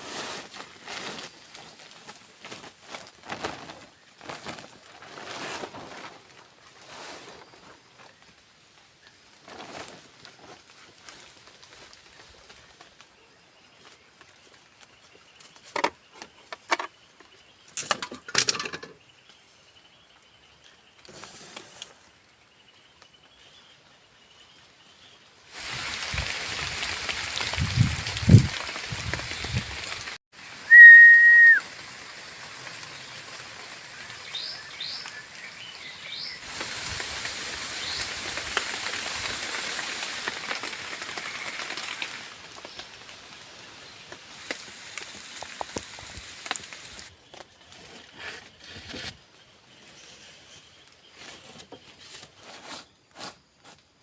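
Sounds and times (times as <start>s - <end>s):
rain falling: 25.5s - 47.1s
loud whistled note: 30.7s - 31.6s.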